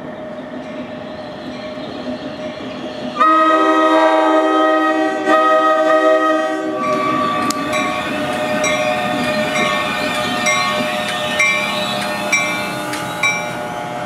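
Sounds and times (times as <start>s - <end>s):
train rumbling: 0.0s - 14.0s
locomotive air horn blasts: 3.2s - 14.0s.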